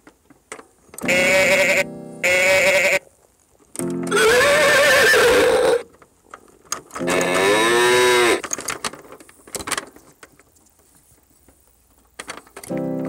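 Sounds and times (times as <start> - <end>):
recorded cow mooing from toy speaker: 1.0 - 3.0, 4.1 - 5.9, 7.0 - 8.4.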